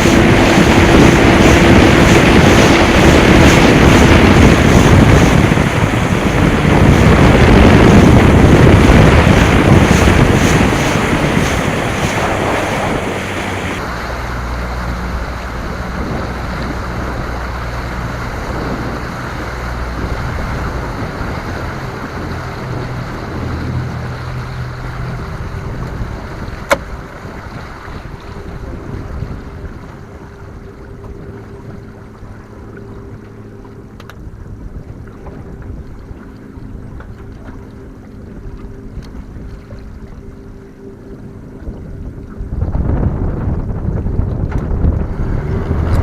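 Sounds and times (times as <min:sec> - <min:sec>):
waves and water: 0:00.0 - 0:46.0
wind buffeting microphone: 0:00.0 - 0:46.0.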